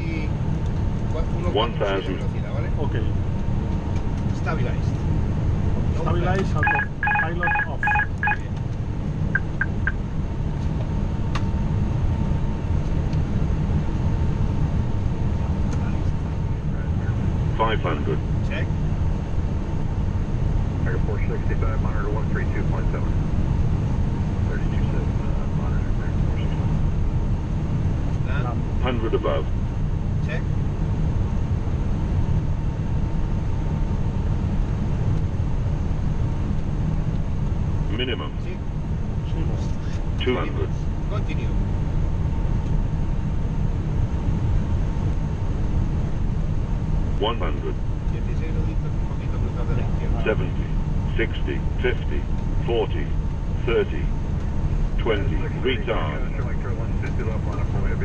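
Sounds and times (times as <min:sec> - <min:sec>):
airflow and engine rumble: 0:00.0 - 0:58.0
faint steady tone: 0:06.6 - 0:08.5
short warning beeps: 0:06.6 - 0:08.5, 0:09.4 - 0:10.0.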